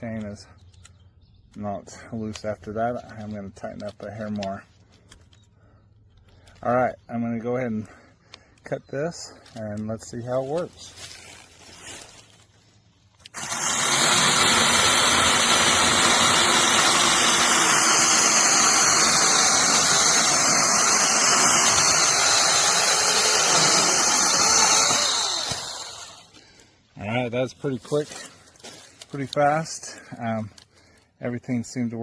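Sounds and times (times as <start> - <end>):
chainsaw cutting log: 13.2 - 26.6.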